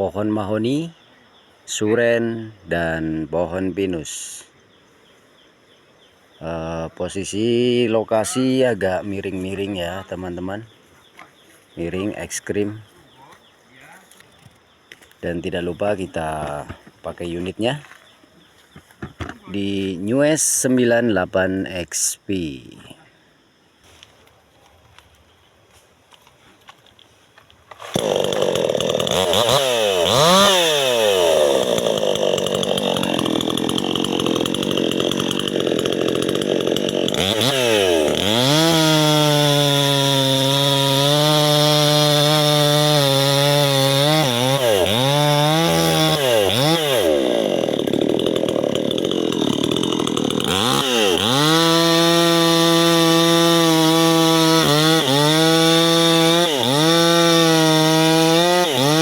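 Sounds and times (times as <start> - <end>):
chainsaw revving and cutting: 27.7 - 59.0.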